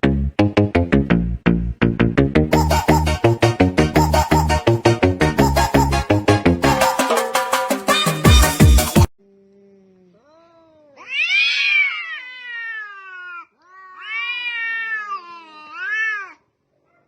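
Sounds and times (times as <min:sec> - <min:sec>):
brief music: 0:02.5 - 0:09.1
cat yowling: 0:10.2 - 0:17.0.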